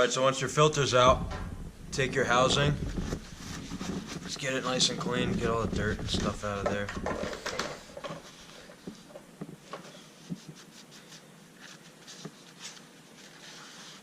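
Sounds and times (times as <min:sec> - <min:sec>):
hand rubbing metal part: 0:00.6 - 0:09.2.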